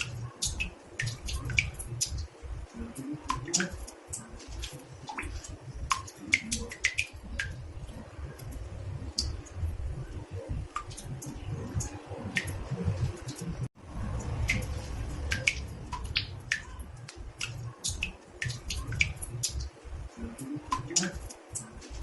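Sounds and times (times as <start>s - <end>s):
water drops plinking into bathtub: 0.0s - 22.0s
low uneven rumble: 7.2s - 20.7s.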